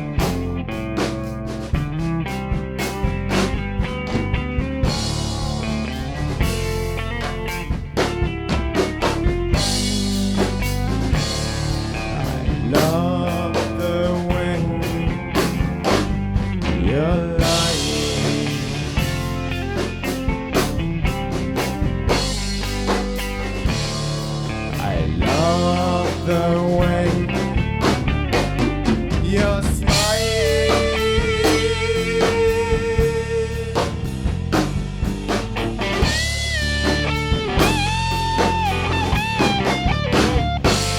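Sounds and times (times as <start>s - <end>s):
bass guitar: 0.0s - 40.9s
drum kit: 0.0s - 40.9s
electric guitar lead: 0.0s - 40.9s.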